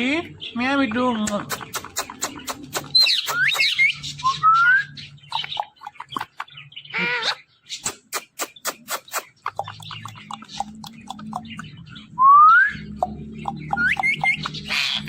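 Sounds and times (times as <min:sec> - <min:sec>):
parrot chirping: 0:00.3 - 0:15.0
parrot clicking: 0:01.2 - 0:03.8, 0:07.9 - 0:11.8, 0:13.0 - 0:14.8.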